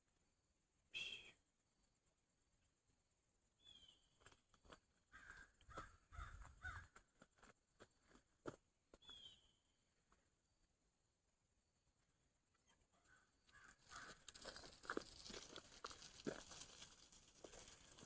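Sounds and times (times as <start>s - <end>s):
faint bird calls: 5.1s - 7.0s.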